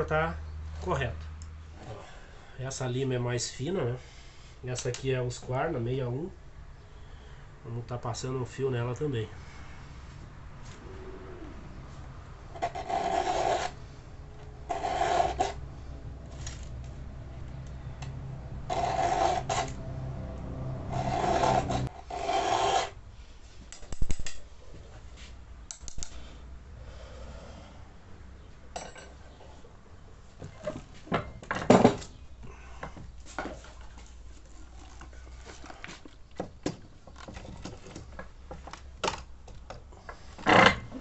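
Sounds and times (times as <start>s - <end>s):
file rasping on chain: 12.6s - 13.8s, 14.7s - 15.6s, 18.7s - 19.8s, 20.9s - 23.0s
sharp clicks and knocks: 23.7s - 24.4s.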